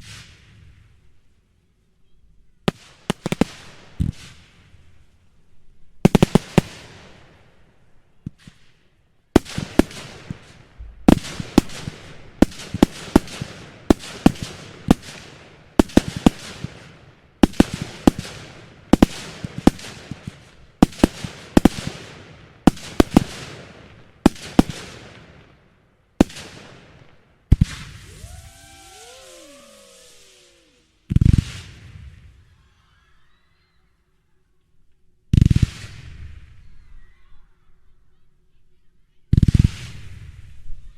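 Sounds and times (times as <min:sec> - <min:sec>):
fireworks shells bursting: 0:27.7 - 0:32.0.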